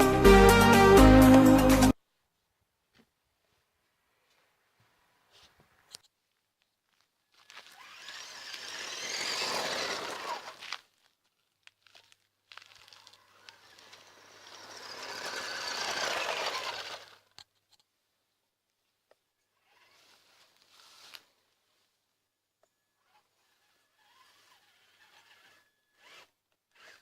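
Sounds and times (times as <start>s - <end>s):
tyres crunching: 6.2s - 17.4s
rc truck driving: 7.4s - 10.8s, 11.9s - 17.5s, 19.6s - 20.3s, 23.0s - 27.0s.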